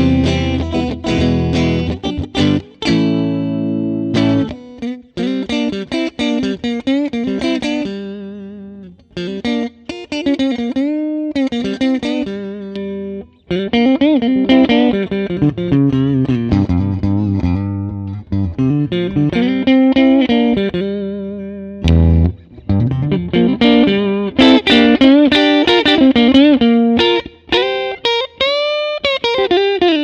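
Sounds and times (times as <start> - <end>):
clean electric guitar melody: 0.0 - 30.0.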